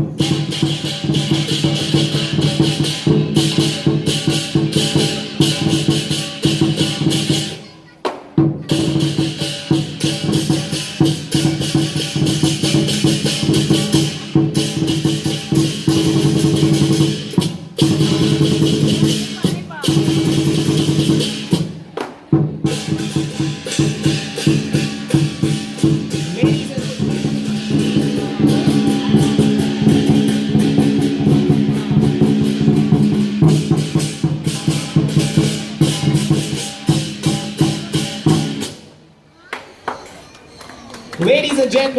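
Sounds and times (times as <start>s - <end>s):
big drum beating: 0.0s - 7.6s, 8.4s - 38.9s
cymbals crashing: 0.0s - 7.6s, 8.4s - 21.8s, 22.4s - 39.0s
gong: 23.8s - 36.6s.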